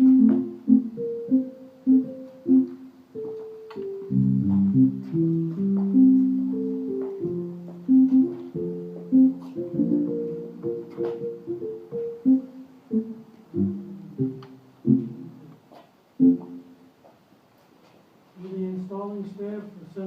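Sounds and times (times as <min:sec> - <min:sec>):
slow plucked melody: 0:00.0 - 0:15.5, 0:16.2 - 0:16.6
low chords: 0:00.0 - 0:15.6, 0:16.2 - 0:16.8.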